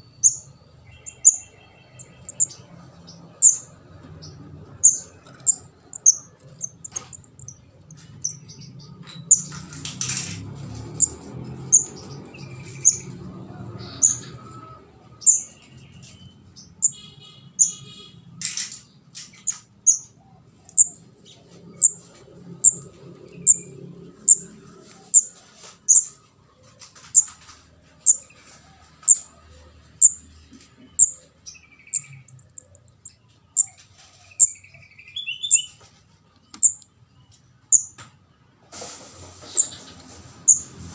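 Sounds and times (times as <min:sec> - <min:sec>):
bird chirping: 0:00.0 - 0:10.0, 0:10.7 - 0:13.2, 0:13.8 - 0:14.4, 0:15.2 - 0:38.0, 0:39.4 - 0:39.9, 0:40.5 - 0:40.8.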